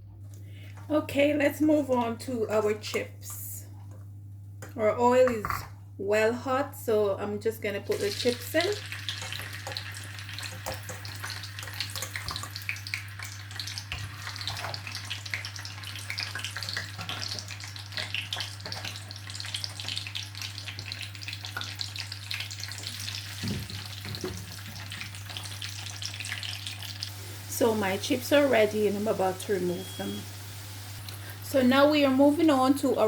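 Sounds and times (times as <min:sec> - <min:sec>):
chips sizzling in hot oil: 0:07.9 - 0:31.8.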